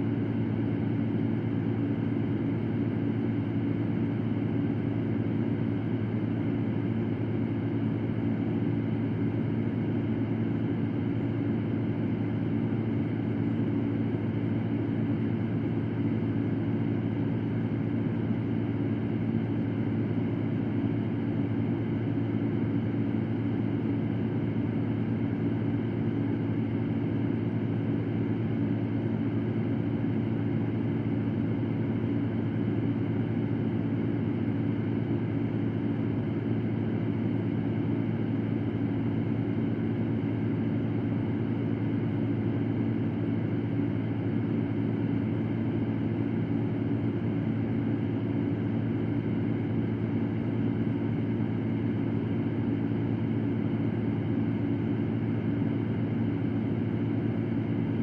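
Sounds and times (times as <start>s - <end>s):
electric fan whooshing and humming: 0.0s - 58.0s.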